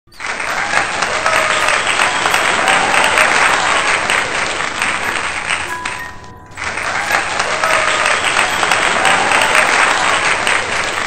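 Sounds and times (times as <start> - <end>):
embroidery machine clattering: 0.3 - 11.0.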